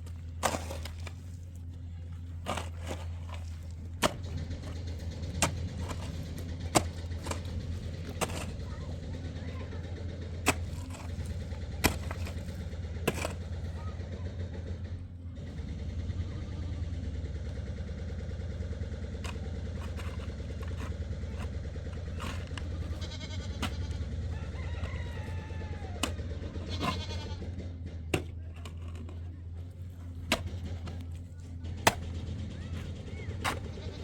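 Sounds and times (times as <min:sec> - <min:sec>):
steady low hum: 0:00.0 - 0:34.0
chickens calling: 0:22.2 - 0:27.5
rooster call: 0:24.3 - 0:26.1.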